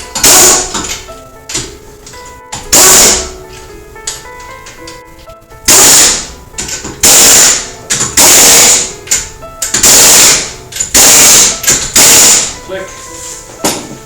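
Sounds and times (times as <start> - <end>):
impact wrench hammering: 0.2 - 1.7, 2.5 - 3.3, 5.7 - 12.6.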